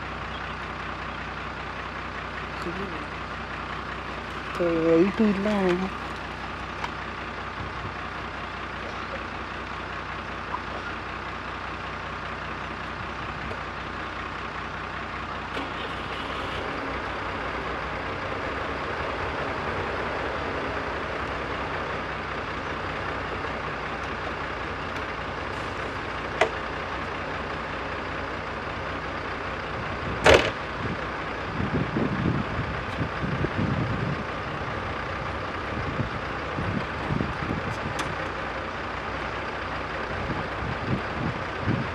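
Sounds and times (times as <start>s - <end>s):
diesel engine running: 0.0s - 41.9s
sharp loud knock: 30.2s - 30.6s.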